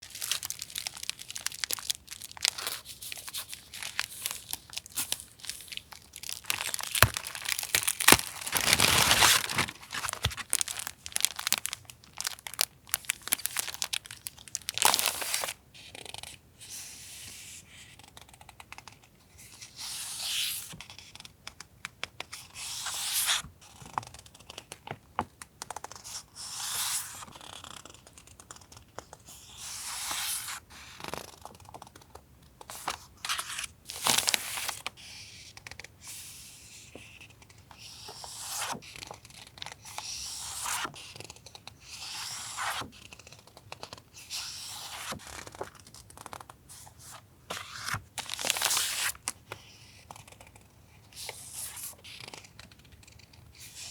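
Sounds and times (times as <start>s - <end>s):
paper rustling and crinkling: 0.0s - 15.6s, 32.7s - 34.9s, 43.7s - 49.6s
paper tearing: 6.5s - 10.9s.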